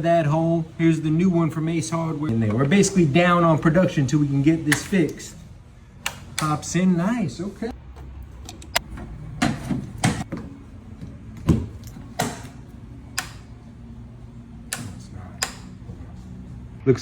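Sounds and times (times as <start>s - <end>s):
steady low hum: 0.0s - 17.0s
switch panel clicks and knocks: 11.4s - 13.6s.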